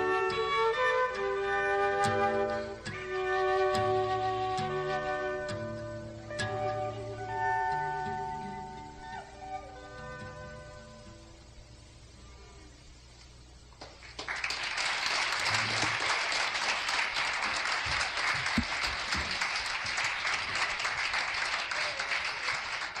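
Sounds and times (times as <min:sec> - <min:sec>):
audience applause: 0:13.8 - 0:23.0.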